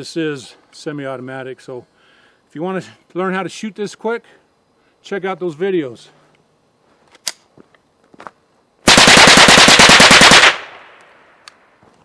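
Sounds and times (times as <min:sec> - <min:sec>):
rapid rifle shots: 0:08.9 - 0:11.0
gunshot echo: 0:08.9 - 0:11.3.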